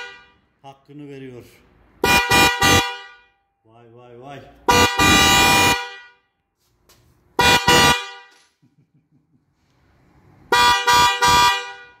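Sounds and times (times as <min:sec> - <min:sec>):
car horns honking: 0:00.0 - 0:00.6, 0:02.0 - 0:03.5, 0:04.6 - 0:06.4, 0:07.4 - 0:08.5, 0:10.4 - 0:12.0.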